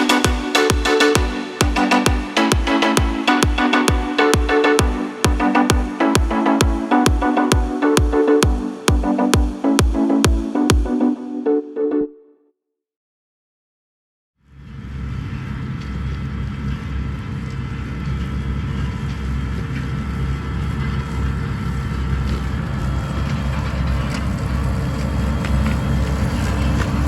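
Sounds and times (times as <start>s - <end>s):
diesel harvesting machinery running: 14.7s - 27.0s.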